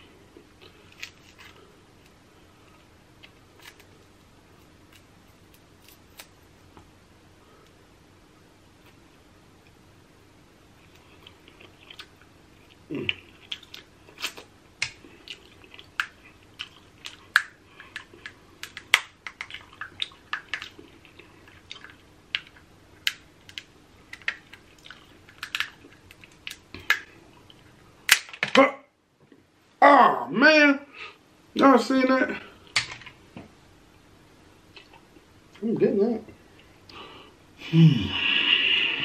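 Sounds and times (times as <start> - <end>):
wet chewing and smacking: 10.8 - 27.8
crab shells cracking: 13.1 - 27.1, 28.1 - 28.6.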